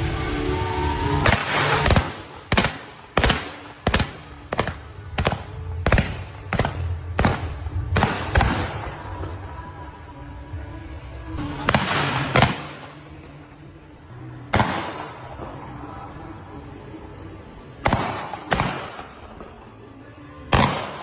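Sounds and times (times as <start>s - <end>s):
background music: 0.0s - 21.0s
fireworks firing sharp shots: 1.2s - 9.2s, 11.6s - 13.1s, 14.5s - 15.6s, 17.8s - 19.6s, 20.5s - 21.0s.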